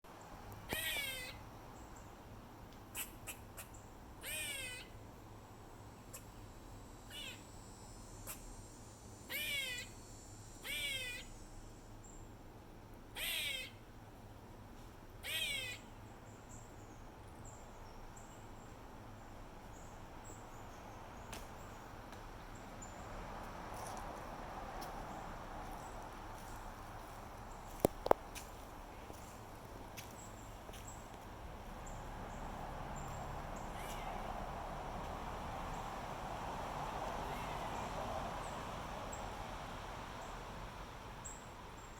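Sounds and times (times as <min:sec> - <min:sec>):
squirrel whining call: 0:00.7 - 0:01.4, 0:03.0 - 0:05.0, 0:07.1 - 0:07.4, 0:09.3 - 0:10.0, 0:10.6 - 0:11.3, 0:13.2 - 0:13.8, 0:15.2 - 0:15.9, 0:33.6 - 0:34.3.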